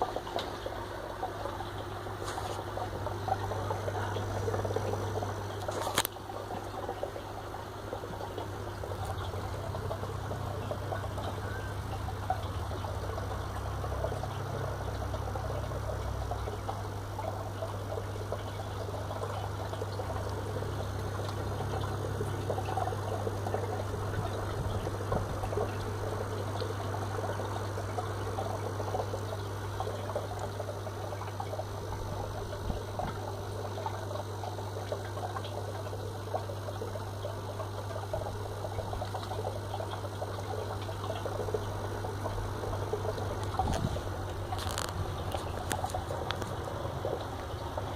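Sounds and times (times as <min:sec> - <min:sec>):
aquarium filter buzzing: 0:00.0 - 0:47.9
water trickling: 0:00.0 - 0:47.9.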